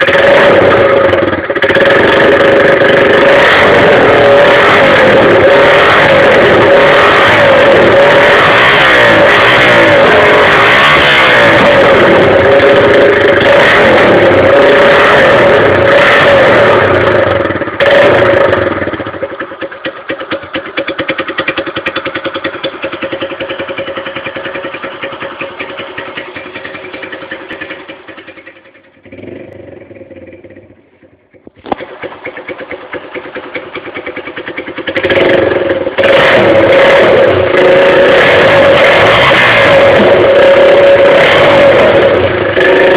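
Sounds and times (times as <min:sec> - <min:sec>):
motorcycle engine idling: 0:00.0 - 0:42.9
motorcycle engine revving: 0:00.0 - 0:42.9.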